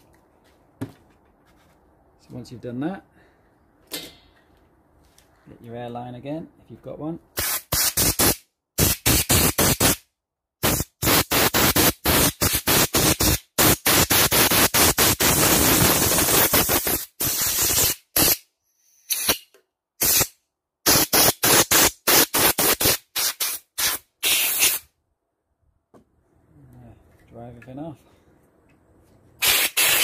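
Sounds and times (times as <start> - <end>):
compressed air blow gun blasts: 7.4 - 24.9, 29.4 - 30.0.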